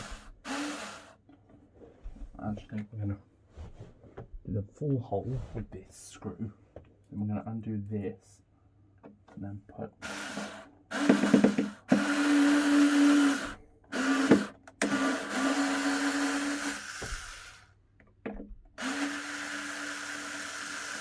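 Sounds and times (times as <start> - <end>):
electric drill running: 0.0 - 1.1, 10.0 - 17.7, 18.8 - 21.0.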